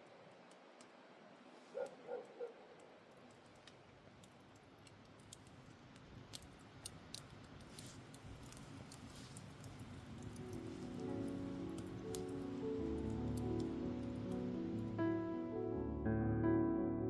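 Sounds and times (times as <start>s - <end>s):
faint background hiss: 0.0s - 16.0s
small clicks: 1.8s - 14.9s.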